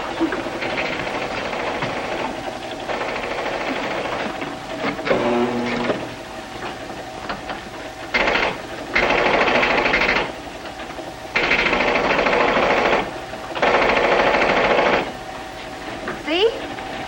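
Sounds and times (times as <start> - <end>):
arcade machine-gun firing: 2.9 - 4.3, 8.2 - 10.3, 11.4 - 15.1.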